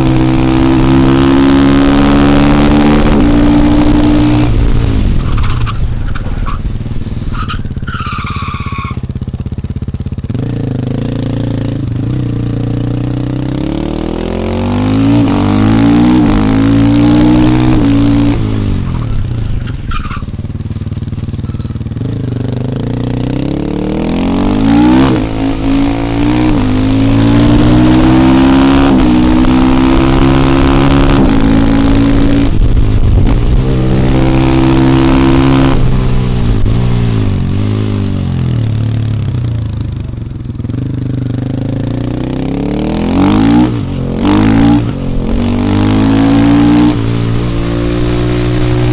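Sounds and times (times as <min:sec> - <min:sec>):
motorcycle engine revving: 0:00.0 - 0:48.9
short high squeal: 0:07.3 - 0:09.0, 0:18.9 - 0:20.4.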